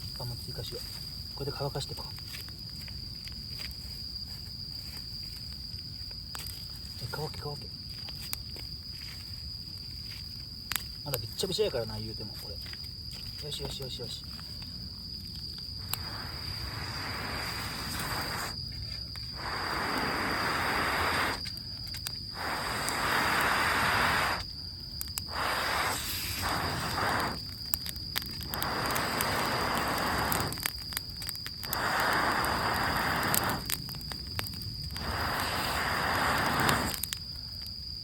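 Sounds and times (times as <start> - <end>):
high insect trill: 0.0 - 38.0
air blown into campfire: 15.8 - 37.4.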